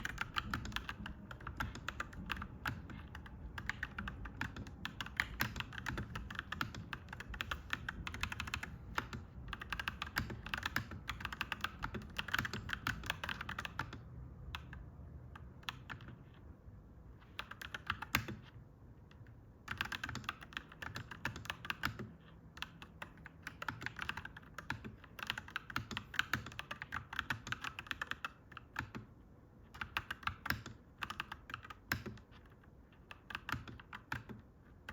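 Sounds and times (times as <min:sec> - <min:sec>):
mechanical keyboard typing: 0:00.0 - 0:16.5, 0:17.1 - 0:34.9
low steady hum: 0:00.0 - 0:17.7.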